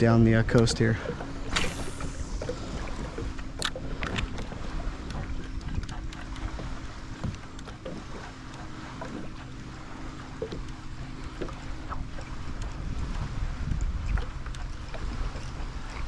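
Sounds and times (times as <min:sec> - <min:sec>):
small water sounds: 0:00.0 - 0:16.0
wind on microphone: 0:11.9 - 0:16.0.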